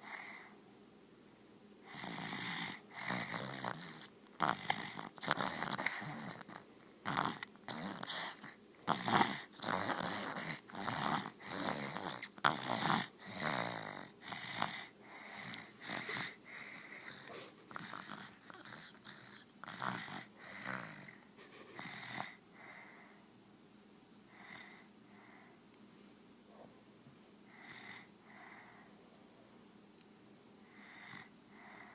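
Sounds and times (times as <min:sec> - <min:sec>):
faint breaths: 0:00.0 - 0:00.8, 0:01.8 - 0:23.4, 0:24.2 - 0:25.8, 0:27.4 - 0:29.7, 0:30.6 - 0:31.9
wheezy snores: 0:01.8 - 0:21.2, 0:21.8 - 0:23.2, 0:24.3 - 0:25.6, 0:27.5 - 0:28.9, 0:30.6 - 0:31.9.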